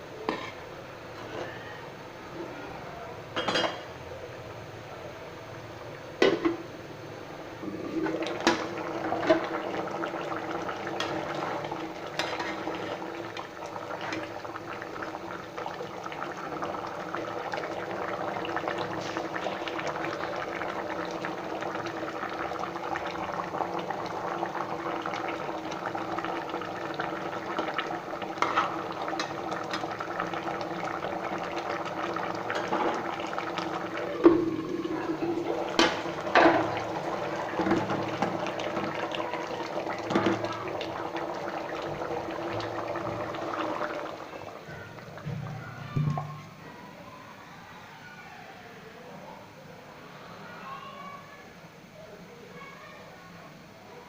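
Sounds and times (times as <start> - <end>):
curry bubbling in a pot: 7.6 - 46.5.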